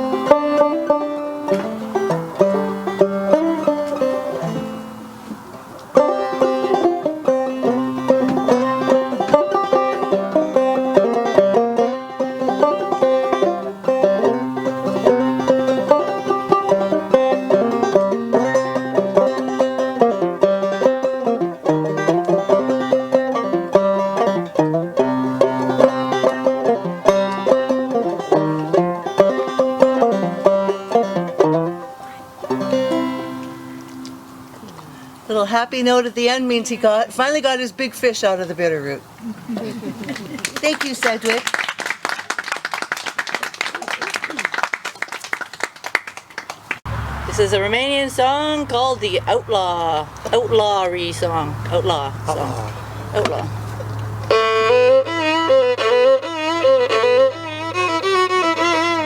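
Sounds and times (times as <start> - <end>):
plucked string instrumental tune: 0.0 - 36.7, 46.9 - 59.0.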